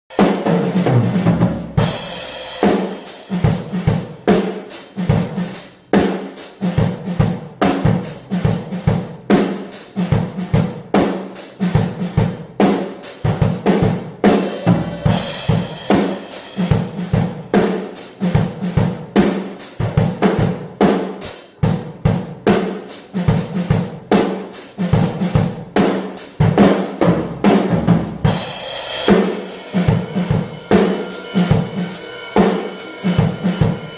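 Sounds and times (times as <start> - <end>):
bass drum: 0.2 - 4.3, 13.3 - 17.6, 26.4 - 33.9.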